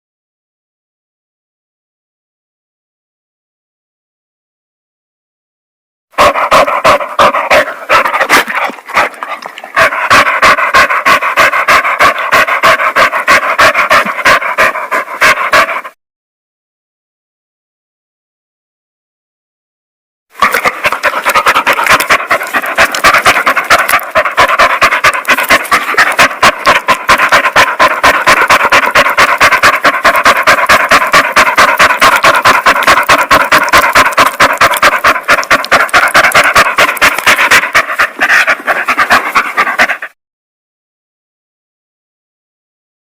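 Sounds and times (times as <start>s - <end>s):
dog panting: 6.2s - 16.0s, 20.4s - 40.2s.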